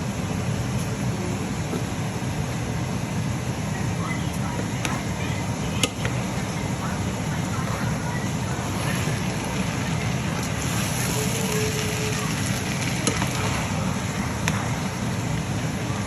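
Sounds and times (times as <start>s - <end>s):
food sizzling in hot oil: 8.7s - 14.5s.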